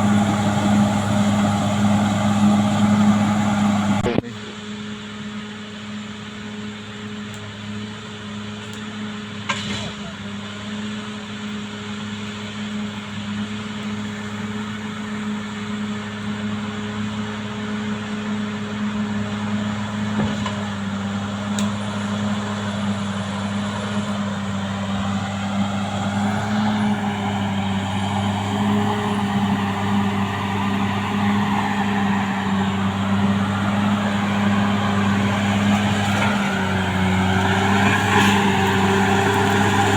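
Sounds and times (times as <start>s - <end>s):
bulldozer diesel engine running: 0.0s - 9.4s, 10.2s - 39.9s.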